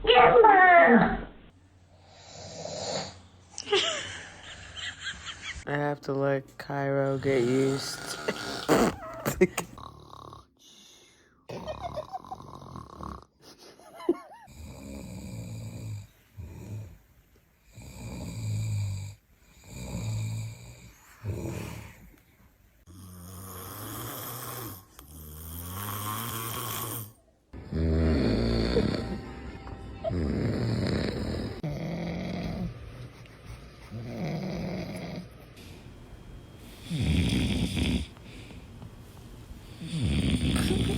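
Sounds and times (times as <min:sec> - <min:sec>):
animal snoring: 0:02.0 - 0:03.3, 0:07.1 - 0:10.8, 0:11.5 - 0:13.4, 0:14.4 - 0:17.0, 0:17.6 - 0:22.1, 0:22.9 - 0:29.3, 0:30.1 - 0:33.1, 0:33.8 - 0:35.8, 0:36.6 - 0:38.6, 0:39.6 - 0:40.9.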